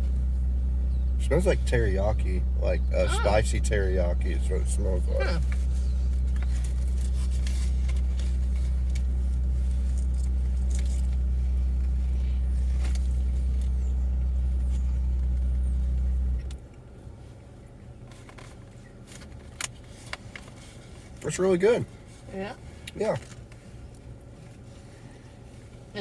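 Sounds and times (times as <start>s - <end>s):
car engine idling: 0.0s - 26.0s
faint clicks and rustles: 5.4s - 26.0s.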